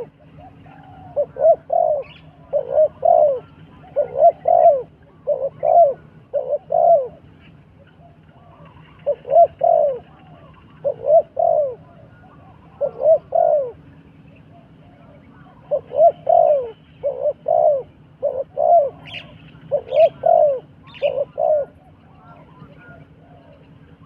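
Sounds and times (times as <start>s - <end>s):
dove cooing: 0.0s - 24.0s.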